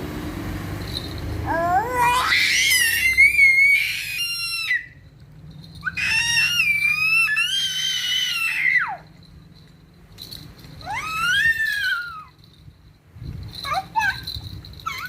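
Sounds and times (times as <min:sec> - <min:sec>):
baby screaming: 0:01.5 - 0:05.0, 0:05.8 - 0:09.1, 0:10.8 - 0:12.3.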